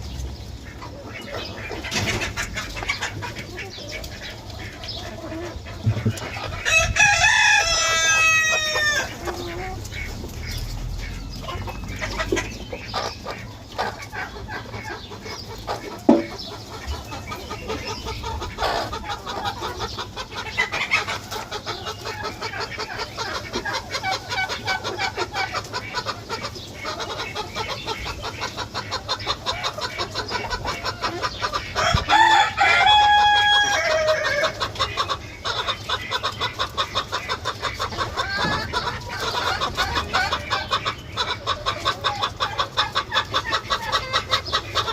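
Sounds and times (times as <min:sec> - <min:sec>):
chickens clucking: 0:00.0 - 0:44.9
rooster crowing: 0:06.6 - 0:09.2, 0:31.8 - 0:34.6.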